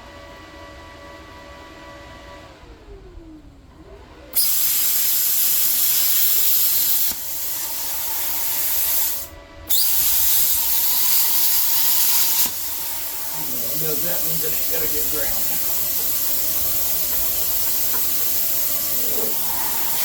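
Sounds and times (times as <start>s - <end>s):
plasma cutter hissing: 4.4s - 20.0s.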